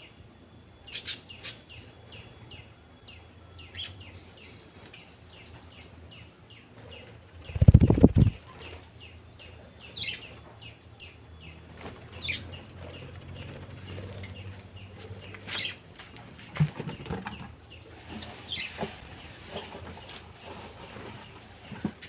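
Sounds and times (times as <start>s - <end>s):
budgerigars chirping: 0.9s - 1.9s, 9.4s - 15.8s
wings fluttering: 7.0s - 8.9s, 11.6s - 22.0s.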